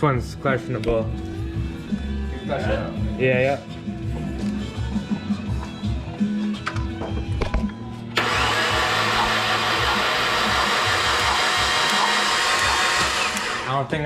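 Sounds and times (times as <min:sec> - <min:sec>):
engine cranking on starter: 0:08.2 - 0:13.8.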